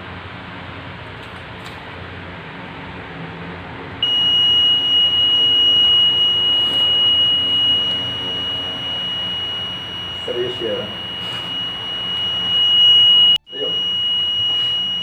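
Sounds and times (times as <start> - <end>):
electronic buzzer high tone: 4.0 - 15.0.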